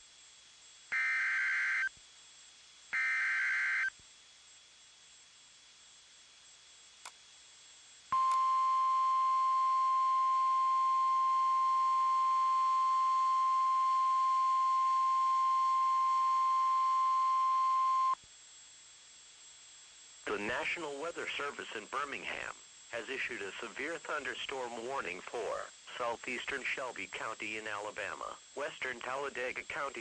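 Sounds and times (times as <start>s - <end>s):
steady warning alert beep: 8.2s - 18.2s.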